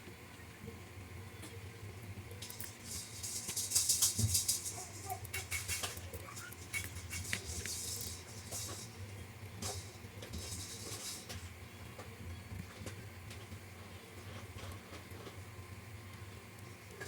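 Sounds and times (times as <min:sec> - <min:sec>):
hissy rustling bursts: 0:02.4 - 0:11.4
small parts rattling and clicking: 0:02.4 - 0:12.1.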